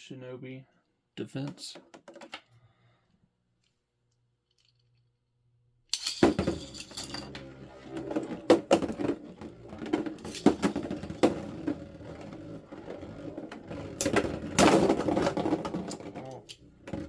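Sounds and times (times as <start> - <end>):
spinning tops clashing: 5.9 - 10.9
clicks and knocks of tops striking: 5.9 - 11.4.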